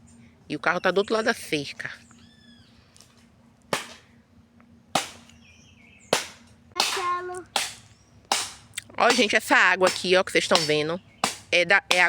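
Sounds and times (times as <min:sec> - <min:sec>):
chopping blows on wood: 0:03.8 - 0:04.0, 0:05.0 - 0:05.3, 0:06.2 - 0:12.0.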